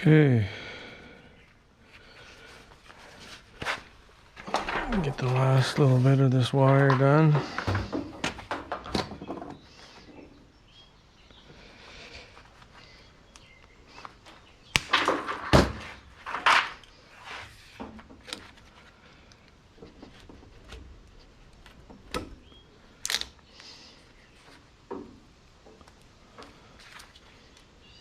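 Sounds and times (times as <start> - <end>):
scrap wire clattering: 7.3 - 8.8.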